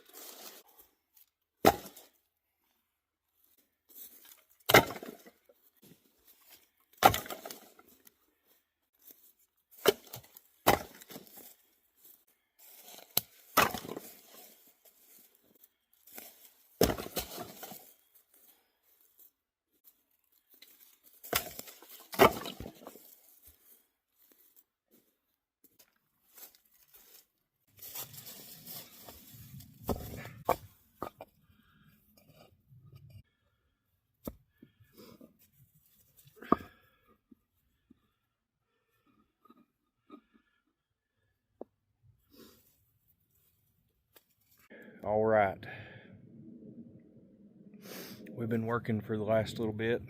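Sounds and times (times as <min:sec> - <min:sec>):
rustling: 0:26.3 - 0:30.9.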